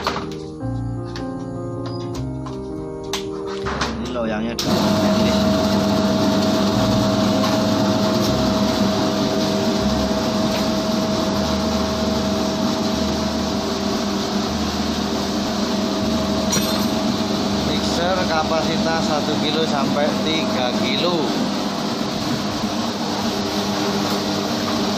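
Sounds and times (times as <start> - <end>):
electric motor humming with whine: 4.6 - 24.9.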